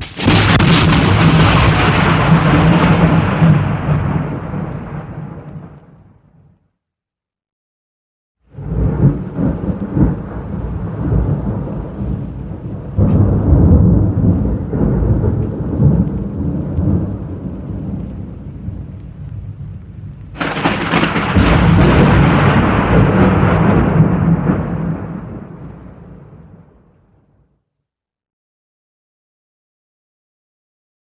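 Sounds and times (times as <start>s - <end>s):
sharp thunder crack: 0.0s - 6.2s, 8.6s - 26.9s
thunder rumbling: 0.0s - 6.2s, 8.5s - 27.2s.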